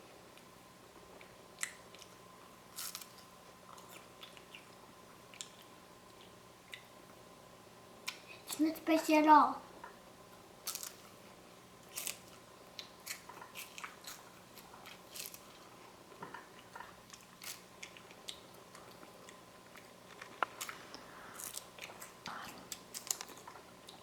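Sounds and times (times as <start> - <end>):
crunchy snack chewing: 1.2 - 4.7, 10.6 - 11.1, 11.8 - 15.7, 17.1 - 24.0.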